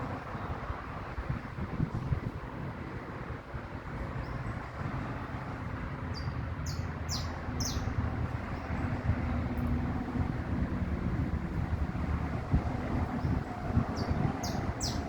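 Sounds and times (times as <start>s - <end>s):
finch singing: 13.9s - 15.0s.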